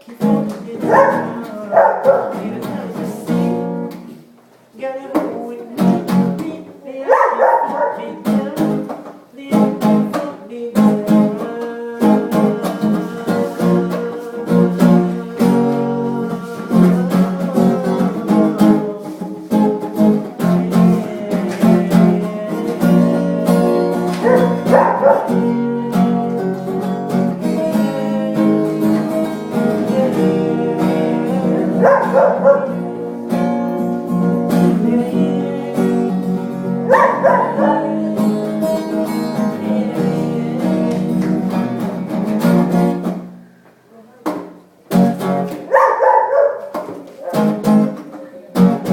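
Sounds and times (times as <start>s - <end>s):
acoustic guitar strumming: 0.0s - 4.4s, 5.0s - 43.6s, 44.2s - 48.9s
dog barking: 0.8s - 2.5s, 7.0s - 8.2s, 24.1s - 25.6s, 31.7s - 32.8s, 36.8s - 38.0s, 45.6s - 47.6s.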